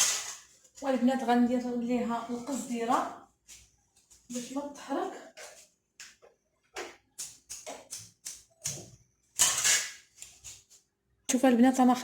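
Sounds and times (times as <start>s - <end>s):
aluminium foil crinkling: 7.2s - 10.9s.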